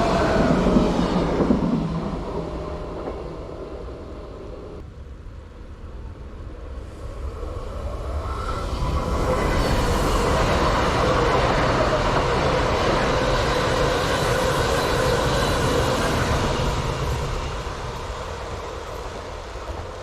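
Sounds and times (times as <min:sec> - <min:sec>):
passenger train rolling past: 0:00.0 - 0:20.0.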